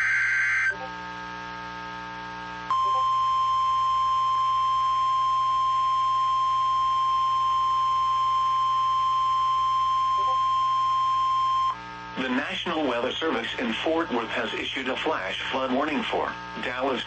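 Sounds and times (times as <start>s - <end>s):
faint steady hum: 0.0s - 17.0s
high steady alarm beep: 2.7s - 11.8s.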